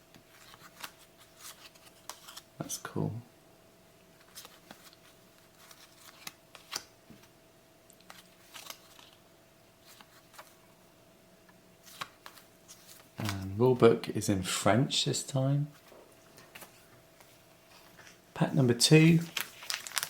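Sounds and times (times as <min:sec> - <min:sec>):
faint steady hum: 0:00.0 - 0:20.0
trading cards rustling and clicking: 0:00.2 - 0:02.5, 0:04.2 - 0:06.9, 0:08.0 - 0:09.2, 0:11.8 - 0:13.6, 0:18.9 - 0:20.0.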